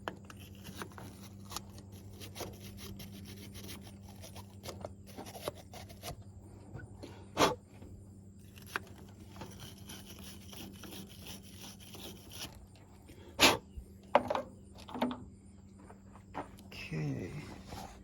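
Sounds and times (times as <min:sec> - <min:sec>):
wire brush scrubbing metal: 0:08.7 - 0:12.6.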